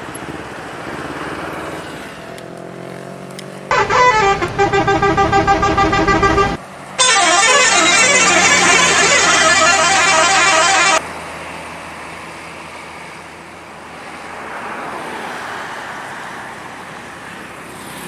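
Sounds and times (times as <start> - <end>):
road traffic noise: 0.0 - 18.0
bus horn playing tune: 3.7 - 11.0.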